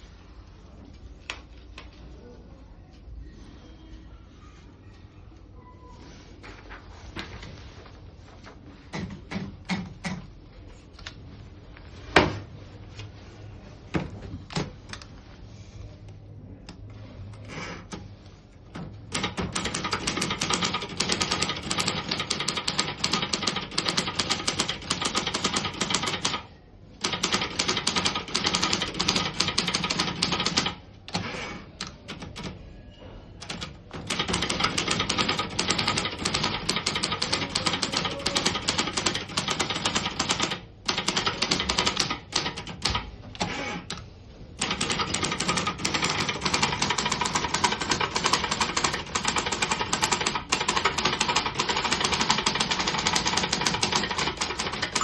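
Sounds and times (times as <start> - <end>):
manual typewriter keystrokes: 19.1 - 32.6, 33.4 - 44.0, 44.6 - 55.0.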